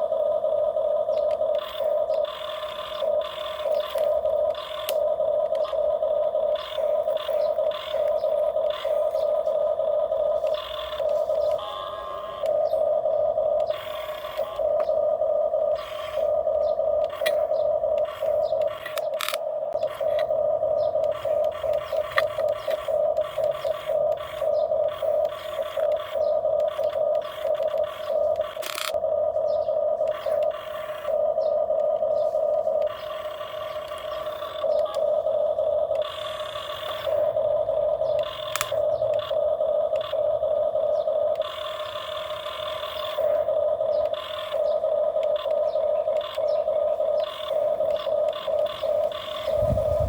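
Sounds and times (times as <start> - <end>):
toy gear motors whining: 0.0 - 50.0.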